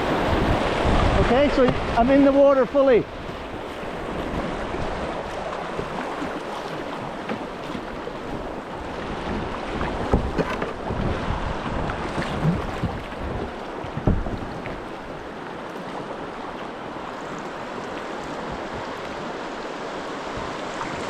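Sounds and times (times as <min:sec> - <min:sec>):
paddle splashes: 0:00.0 - 0:21.0
river current rushing: 0:00.0 - 0:21.0
knocks against boat: 0:00.9 - 0:02.1, 0:05.8 - 0:08.5, 0:09.2 - 0:11.2, 0:11.8 - 0:15.0.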